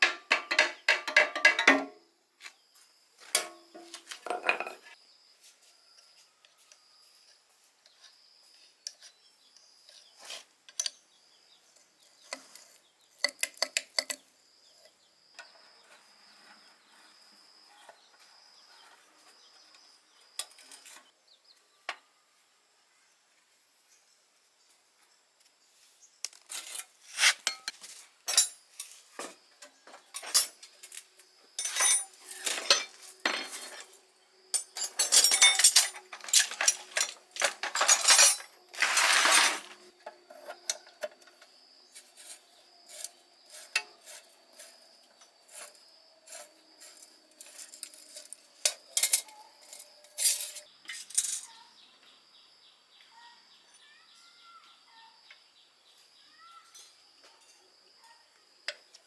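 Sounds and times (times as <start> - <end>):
metal hand tools clinking: 26.7 - 29.0, 31.6 - 34.0, 34.6 - 39.8, 46.3 - 51.5.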